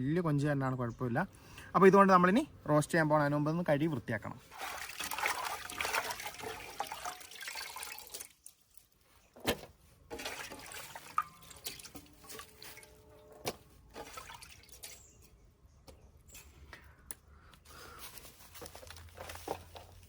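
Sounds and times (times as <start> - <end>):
water running and splashing: 4.5 - 8.9, 10.1 - 13.0, 13.9 - 15.0.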